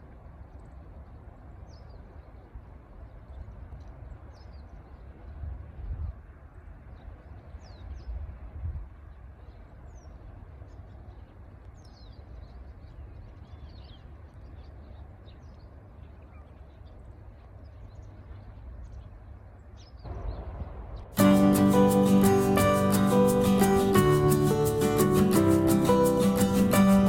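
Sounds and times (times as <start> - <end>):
low rumble: 20.1 - 21.2
acoustic guitar music: 21.2 - 27.0.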